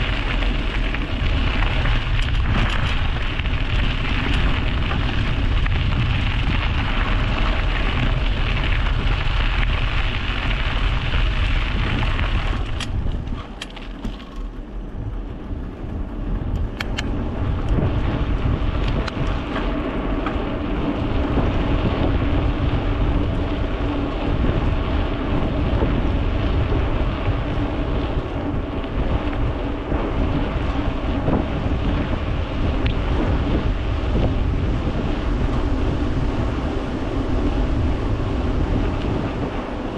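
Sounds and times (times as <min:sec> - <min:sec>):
rolling tyre noise: 0:00.0 - 0:39.9
wind buffeting: 0:00.0 - 0:39.9
sharp clicks: 0:12.8 - 0:17.2.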